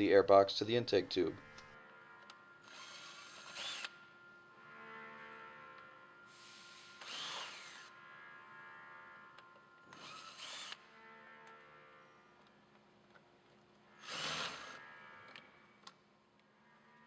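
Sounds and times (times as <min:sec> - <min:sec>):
power drill-driver whirring: 0:01.4 - 0:04.2, 0:05.7 - 0:08.0, 0:09.3 - 0:10.9, 0:14.0 - 0:15.9.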